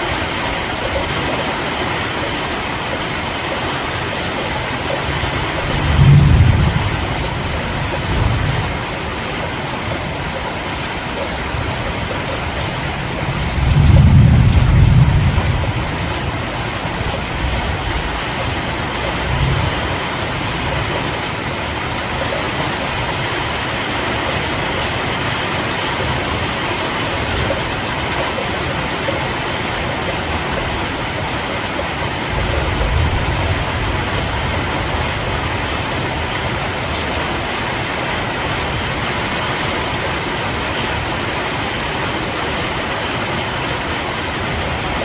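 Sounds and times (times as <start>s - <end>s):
steady rain hissing: 0.0s - 45.0s
low rumble: 13.0s - 19.9s.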